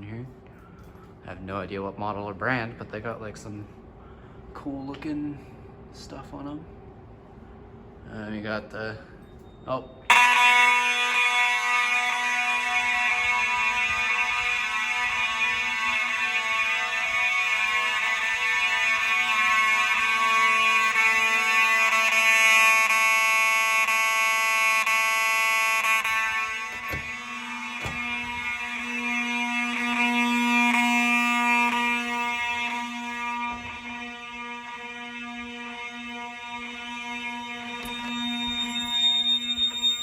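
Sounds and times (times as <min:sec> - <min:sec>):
fire alarm horn buzzing: 0:09.0 - 0:40.0.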